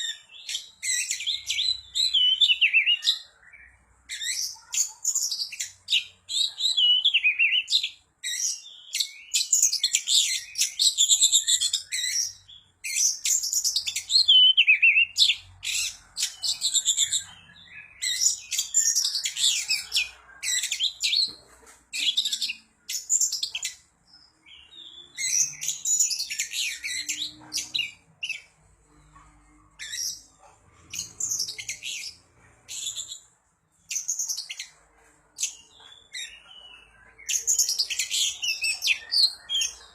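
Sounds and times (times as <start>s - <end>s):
songbird singing varied phrases: 0.0s - 21.3s, 21.9s - 29.2s.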